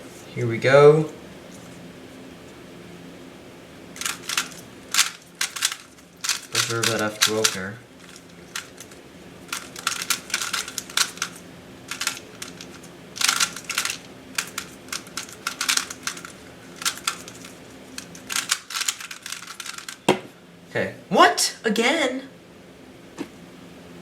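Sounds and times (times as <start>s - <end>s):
faint steady hum: 0.0s - 24.0s
plastic puzzle cube clicking: 4.0s - 20.0s.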